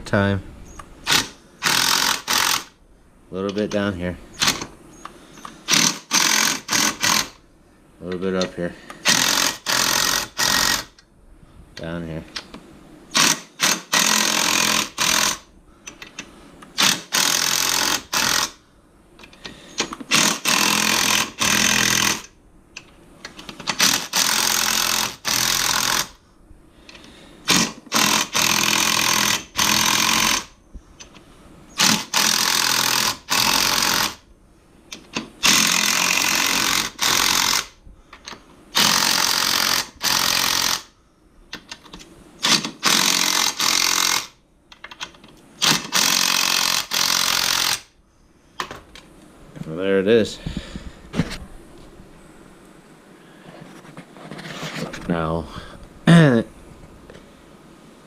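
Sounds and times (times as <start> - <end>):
impact wrench hammering: 5.7 - 7.4, 13.1 - 15.4, 27.5 - 30.5.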